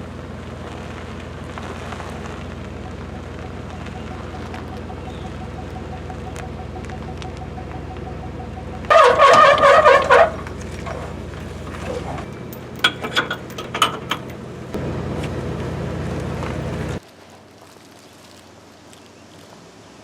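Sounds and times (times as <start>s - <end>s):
motor humming: 1.4s - 17.0s.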